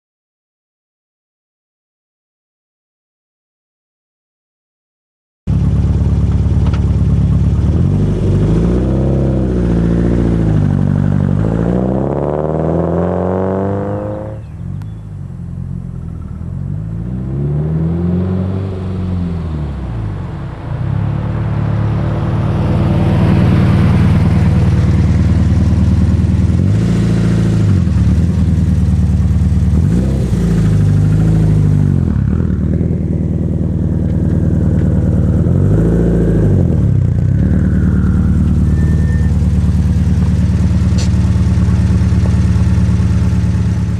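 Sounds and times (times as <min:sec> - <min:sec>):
engine idling and revving: 0:05.5 - 0:43.9
engine knock: 0:39.3 - 0:43.9.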